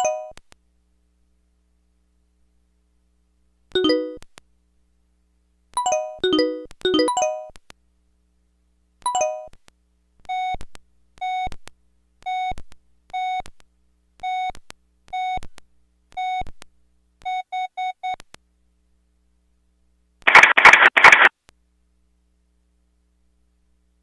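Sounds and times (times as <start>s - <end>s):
electronic ringtone beeps: 3.8s - 4.2s, 5.8s - 7.5s.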